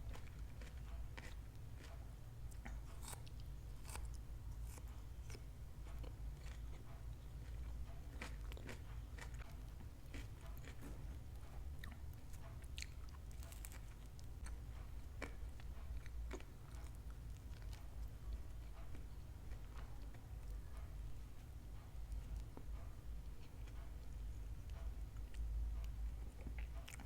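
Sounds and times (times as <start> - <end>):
crunching and chewing food: 0.0 - 27.0.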